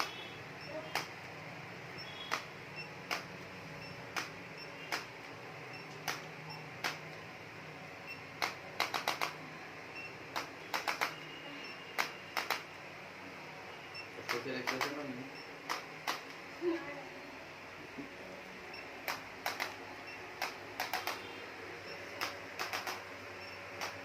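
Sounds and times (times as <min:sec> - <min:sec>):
sharp clicks and taps: 0:00.9 - 0:01.1, 0:02.3 - 0:02.5, 0:03.1 - 0:03.4, 0:04.2 - 0:05.1, 0:05.9 - 0:07.2, 0:08.4 - 0:09.4, 0:10.3 - 0:11.2, 0:12.0 - 0:12.6, 0:14.2 - 0:15.0, 0:19.1 - 0:19.8, 0:23.8 - 0:24.0.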